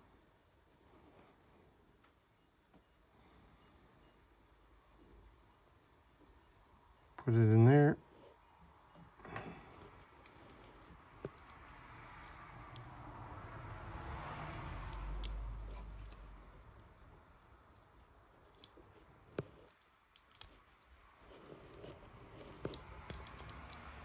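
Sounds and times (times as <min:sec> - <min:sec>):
plastic parts clicking: 0:22.6 - 0:24.0.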